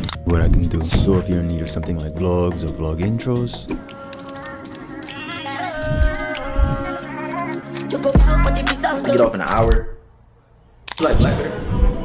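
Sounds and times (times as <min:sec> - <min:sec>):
melody over a beat: 0:00.0 - 0:09.3
deep bass hits: 0:08.2 - 0:09.0.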